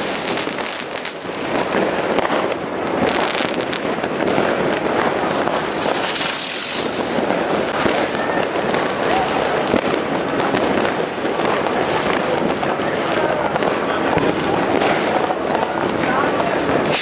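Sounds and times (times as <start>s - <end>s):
fireworks crackling: 0.0s - 17.0s
fireworks hissing: 4.8s - 7.8s, 16.6s - 17.0s.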